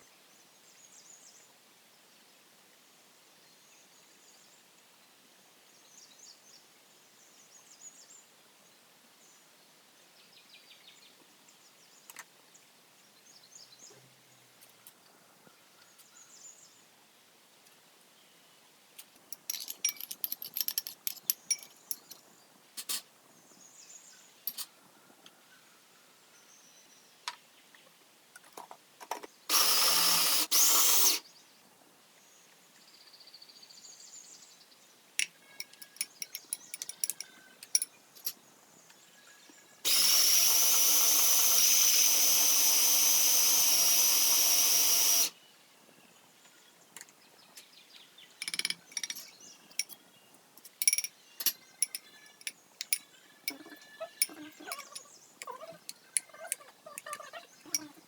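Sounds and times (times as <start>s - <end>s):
utensils clicking and knocking: 19.4s - 22.2s, 35.2s - 38.4s, 48.4s - 50.0s, 50.6s - 57.1s
electric blender running: 39.9s - 45.3s.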